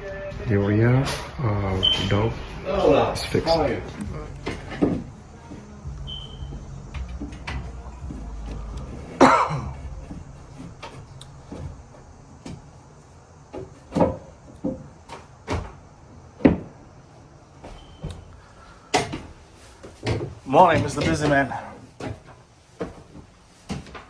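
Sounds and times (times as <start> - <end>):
wooden knocks and thumps: 3.5 - 12.8, 13.5 - 15.8, 16.4 - 16.8
low rumble: 3.8 - 12.2.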